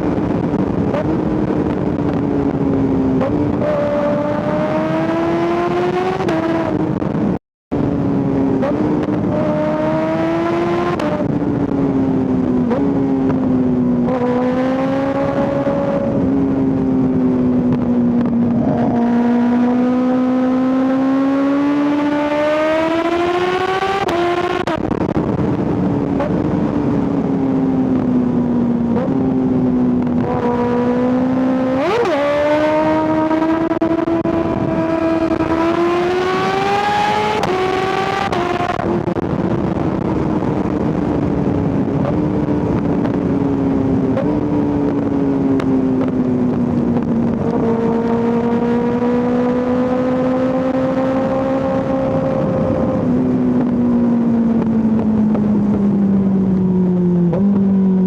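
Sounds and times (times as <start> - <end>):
motorcycle engine at high revs: 0.0 - 7.3, 8.0 - 58.0
wind rushing: 14.0 - 21.6.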